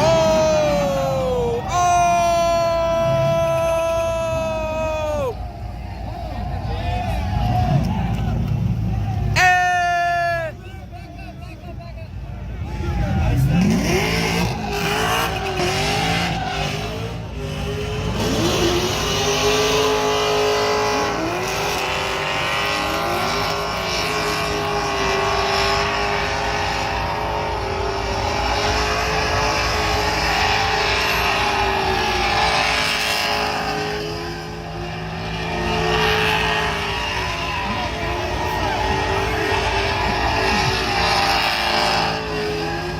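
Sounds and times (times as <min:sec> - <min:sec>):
car engine revving: 0:12.4 - 0:42.9.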